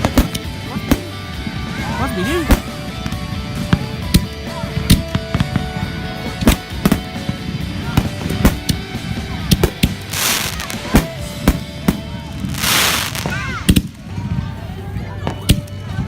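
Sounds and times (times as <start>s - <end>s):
fireworks bangs: 0.0s - 1.4s, 2.4s - 2.9s, 6.3s - 8.8s, 9.6s - 14.2s
hissing crackle: 9.7s - 11.6s, 12.3s - 13.4s.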